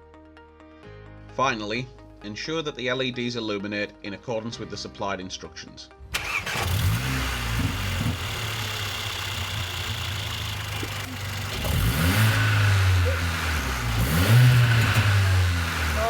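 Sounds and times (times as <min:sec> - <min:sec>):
car engine idling and revving: 0:06.2 - 0:16.0.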